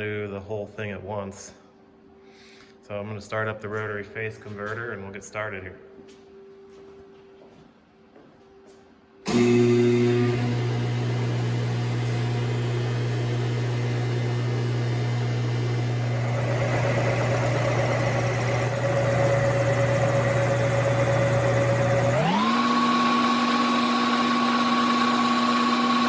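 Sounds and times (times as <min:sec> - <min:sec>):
electrical hum: 0:09.2 - 0:26.0.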